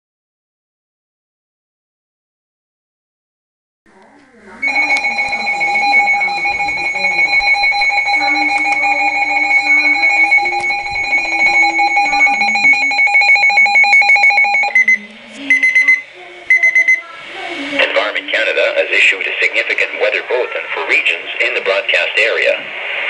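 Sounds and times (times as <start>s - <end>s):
short beeps: 4.6s - 17.0s
two-pitch electronic alarm: 4.6s - 17.0s.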